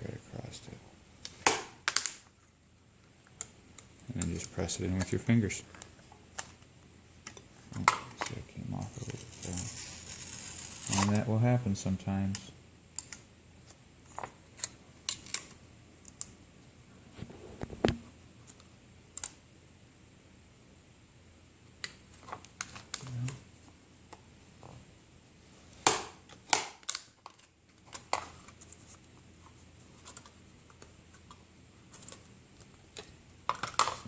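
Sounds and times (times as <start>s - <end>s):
hands pressing foil tape: 8.9s - 11.2s.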